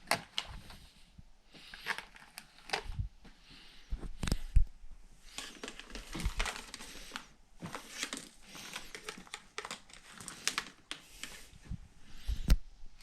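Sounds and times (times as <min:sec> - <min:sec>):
packaging crinkling and rustling: 0:00.0 - 0:00.9, 0:01.6 - 0:03.0, 0:05.3 - 0:11.6.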